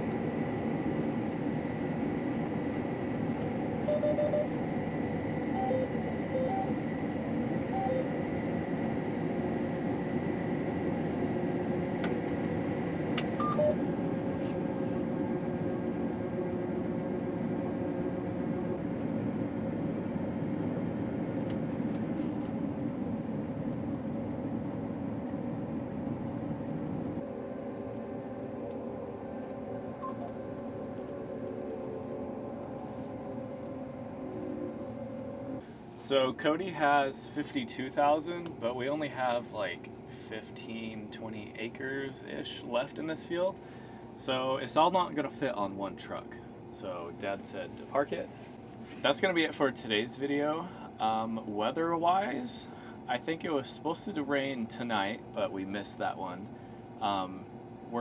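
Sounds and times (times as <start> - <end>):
combine harvester running: 0.0 - 35.9
short beeps: 3.9 - 4.5, 5.5 - 6.8, 7.8 - 8.1, 13.4 - 13.8, 30.0 - 30.3.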